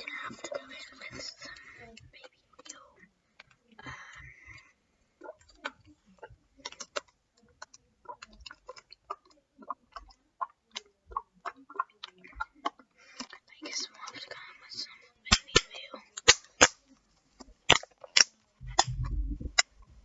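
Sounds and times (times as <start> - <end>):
sticky slime clicks: 15.3 - 16.8, 17.6 - 19.7.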